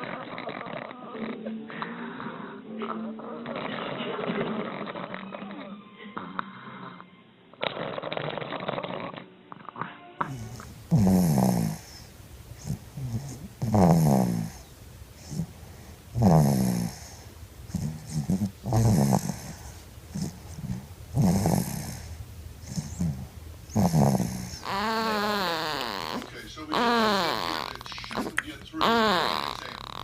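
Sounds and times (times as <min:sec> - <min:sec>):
baby snoring: 0:00.0 - 0:01.4, 0:03.4 - 0:30.0
soft breathing: 0:09.8 - 0:30.0.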